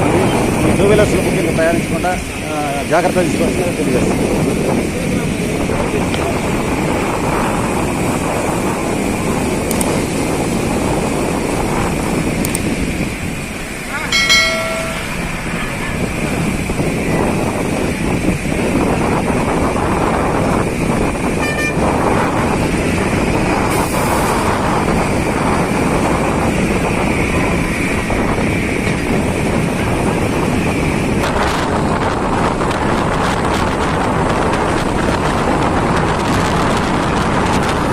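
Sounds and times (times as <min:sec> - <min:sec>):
road traffic: 0:00.0 - 0:37.9
vehicle horn tooting: 0:21.4 - 0:22.0.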